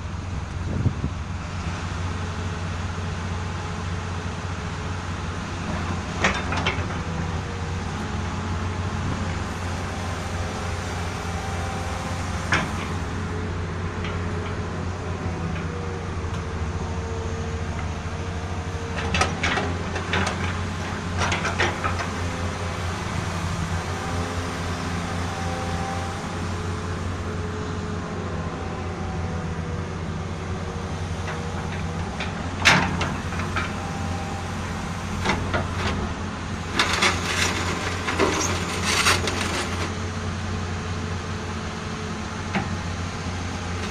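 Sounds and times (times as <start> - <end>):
excavator diesel engine running: 0.0 - 43.9.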